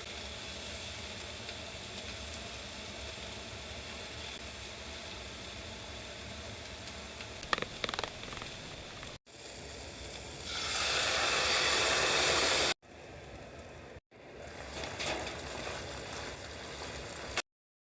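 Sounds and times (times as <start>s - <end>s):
frying pan sizzling: 0.0s - 12.8s.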